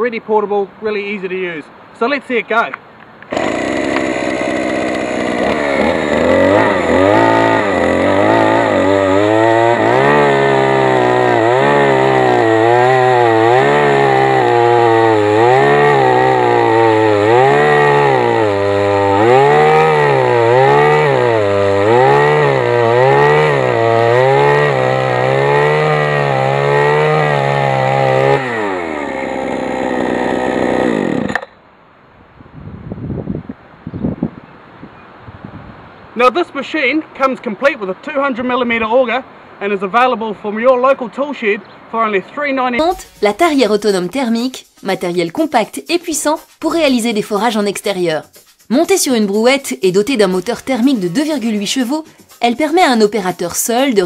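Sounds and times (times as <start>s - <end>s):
two-stroke engine surging: 3.3s - 31.5s.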